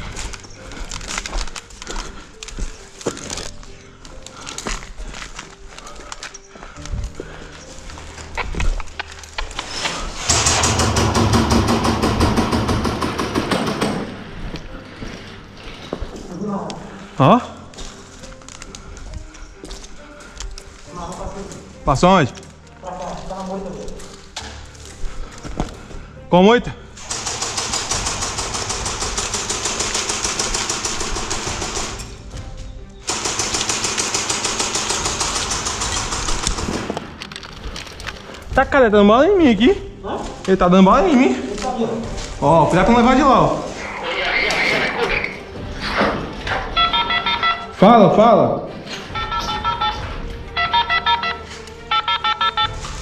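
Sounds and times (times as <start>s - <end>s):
airsoft gun full-auto firing: 10.3s - 13.8s, 27.0s - 32.0s, 33.1s - 37.0s.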